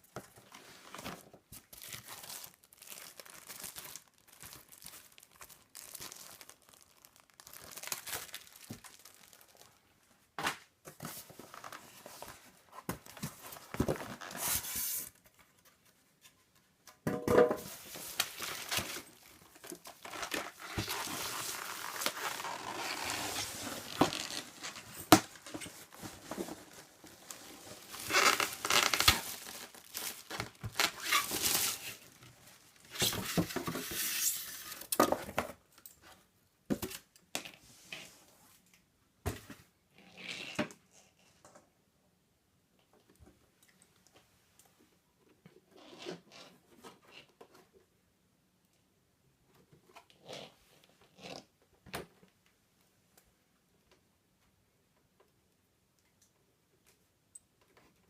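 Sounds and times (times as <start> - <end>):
packaging crinkling and tearing: 1.6 - 9.8, 17.8 - 33.3.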